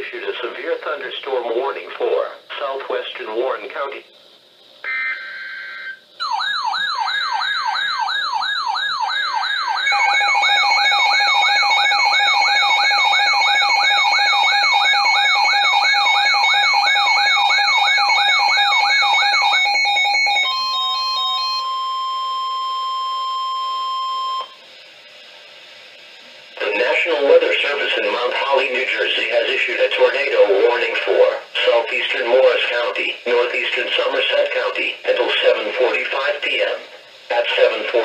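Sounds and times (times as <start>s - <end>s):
steady alert tone: 6.2s - 21.7s
electronic wail rising and falling: 6.2s - 22.7s.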